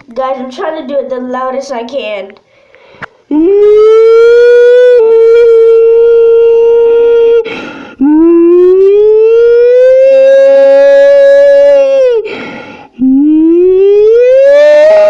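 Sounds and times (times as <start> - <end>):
child breathing in: 2.4 - 3.3, 7.5 - 8.0, 12.3 - 13.0
child imitating a siren through a tube: 3.3 - 12.3, 12.9 - 15.0.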